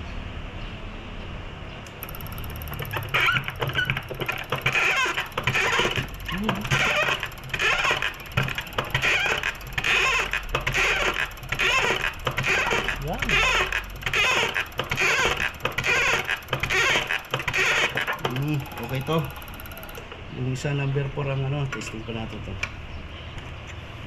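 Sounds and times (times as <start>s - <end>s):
fuel injector spraying chatter: 1.9s - 20.8s.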